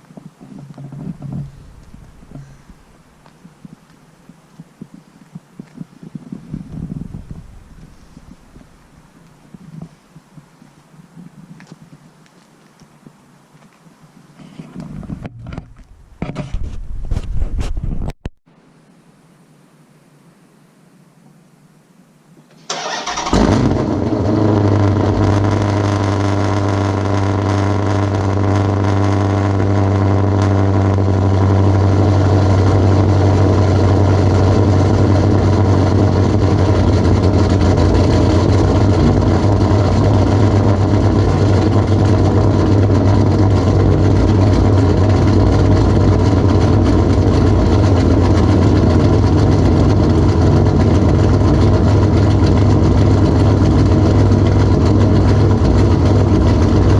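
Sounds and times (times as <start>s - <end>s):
car engine starting and idling: 0.5s - 3.3s, 22.5s - 56.9s.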